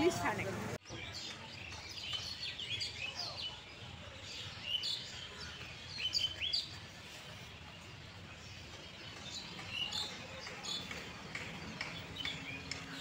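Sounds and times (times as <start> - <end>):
birds chirping: 0.0 - 13.0.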